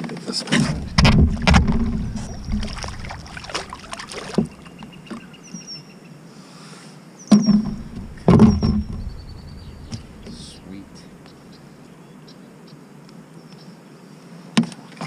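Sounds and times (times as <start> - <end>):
water sloshing: 0.5 - 5.2, 7.4 - 11.2
knocks on kayak: 0.6 - 5.0, 7.3 - 11.0.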